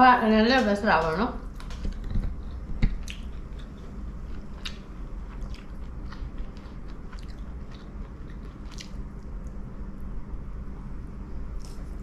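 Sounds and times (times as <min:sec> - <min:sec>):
low background rumble: 0:00.0 - 0:12.0
person chewing food: 0:01.5 - 0:09.6.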